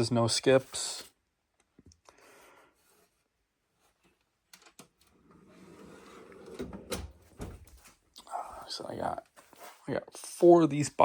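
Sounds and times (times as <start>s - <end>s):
soft rustle: 7.5s - 10.4s.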